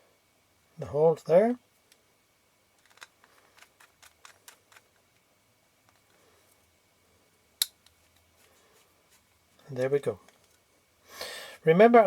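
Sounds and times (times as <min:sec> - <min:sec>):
faint handling noise: 0:02.7 - 0:06.8, 0:07.6 - 0:10.7.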